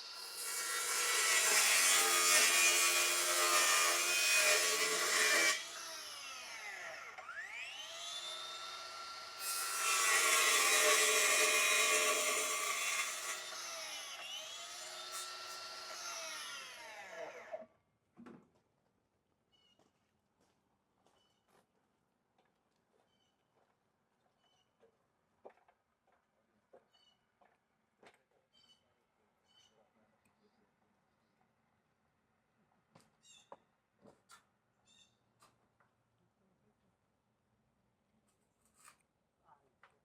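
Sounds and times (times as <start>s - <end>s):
angle grinder cutting: 0.0s - 17.6s.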